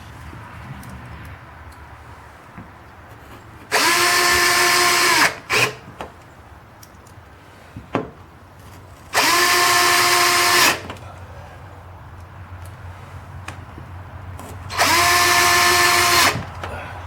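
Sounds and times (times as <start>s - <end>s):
power drill driving screws: 3.7s - 5.8s, 9.1s - 10.9s, 14.7s - 16.5s.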